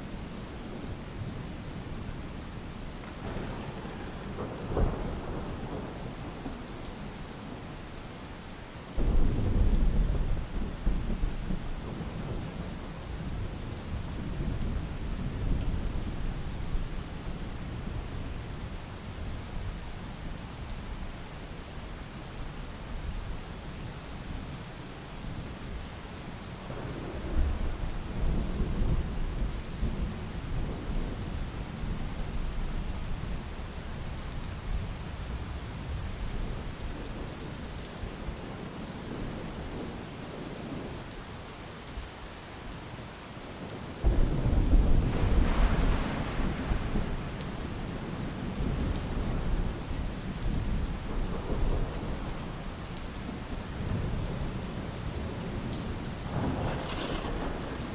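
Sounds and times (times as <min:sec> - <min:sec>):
steady rain falling: 0:00.0 - 0:57.9
thunder rumbling: 0:03.0 - 0:07.2, 0:44.0 - 0:52.5, 0:53.8 - 0:57.9
thunder crack: 0:44.0 - 0:47.6, 0:56.3 - 0:57.9.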